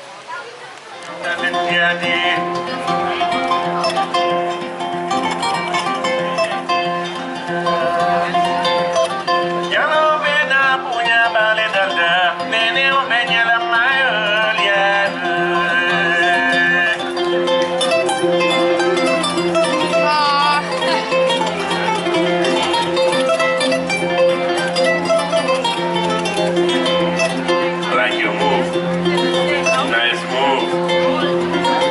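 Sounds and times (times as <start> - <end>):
plucked string instruments: 0.0 - 31.9
wavering melody line: 14.7 - 31.9.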